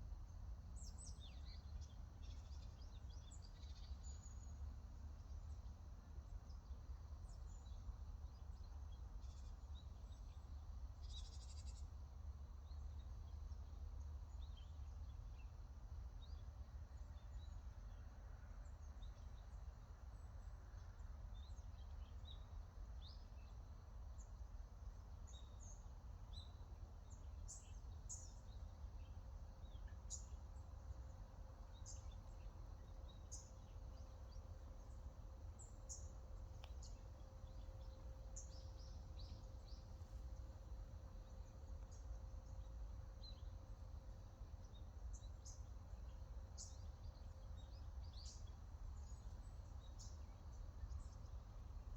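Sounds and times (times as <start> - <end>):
low background rumble: 27.1 - 51.9
wild birds chirping: 27.6 - 51.1.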